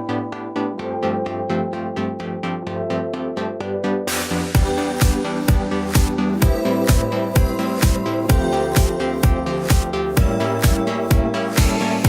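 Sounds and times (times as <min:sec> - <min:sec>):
electronic music with synth: 0:00.0 - 0:12.0
kick drum beat: 0:04.6 - 0:12.0.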